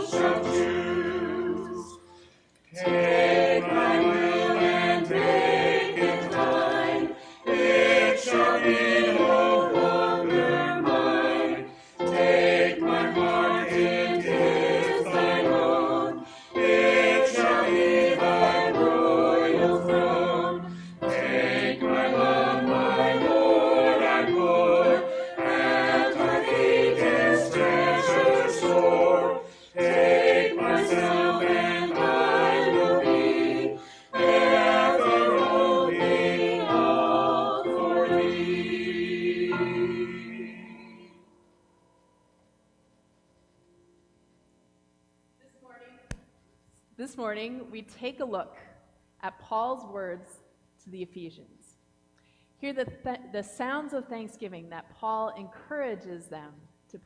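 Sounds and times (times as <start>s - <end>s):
choir singing in parts: 0.0s - 41.4s.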